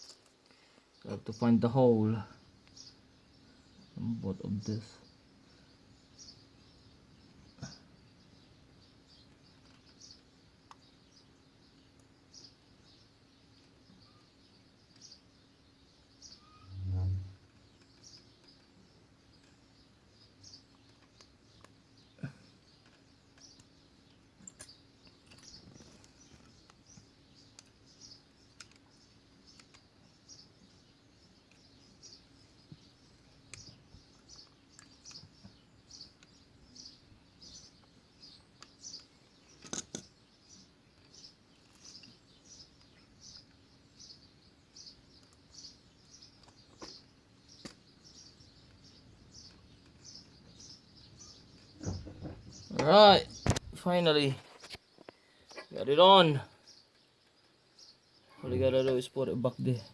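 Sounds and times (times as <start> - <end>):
faint bird chirping: 0.0 - 59.9
sharp clicks: 52.7 - 53.8.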